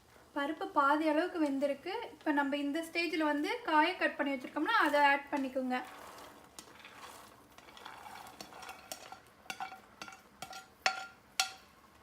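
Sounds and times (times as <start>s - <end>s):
metal spoon clinking against pan: 7.6s - 11.7s.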